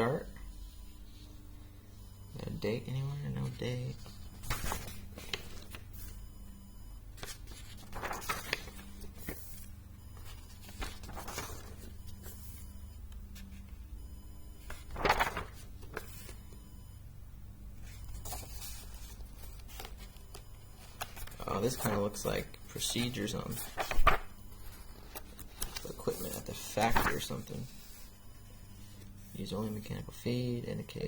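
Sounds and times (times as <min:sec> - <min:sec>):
low steady hum: 0:00.0 - 0:31.0
paper pages rustling: 0:03.4 - 0:06.2, 0:07.2 - 0:12.7, 0:14.6 - 0:16.4, 0:17.8 - 0:28.1.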